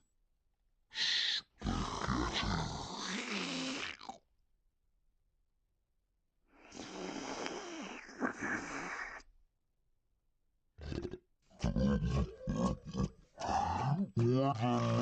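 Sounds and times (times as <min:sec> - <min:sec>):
distorted grunting voice: 0:01.0 - 0:04.2, 0:10.8 - 0:15.0.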